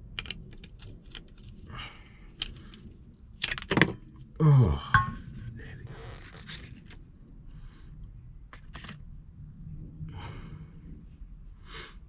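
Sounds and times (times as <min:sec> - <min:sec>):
gearbox parts clicking and scraping: 0:00.0 - 0:01.7
low steady hum: 0:00.0 - 0:12.0.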